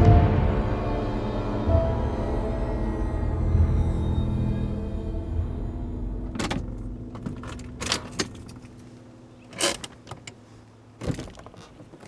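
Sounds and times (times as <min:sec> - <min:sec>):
low music: 0:00.0 - 0:09.6
sharp clicks and knocks: 0:06.3 - 0:08.8.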